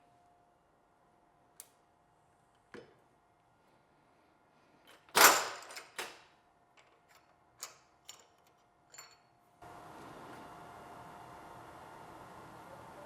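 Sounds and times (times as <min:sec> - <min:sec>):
tools and steel parts clicking: 0:06.8 - 0:09.4.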